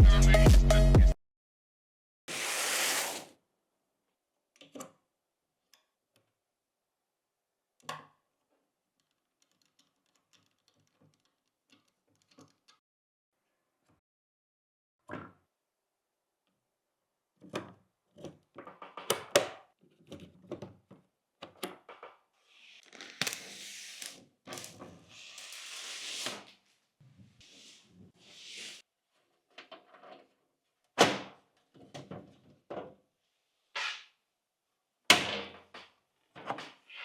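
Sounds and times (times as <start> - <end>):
hissing scrapes or rustles: 2.3 - 3.3.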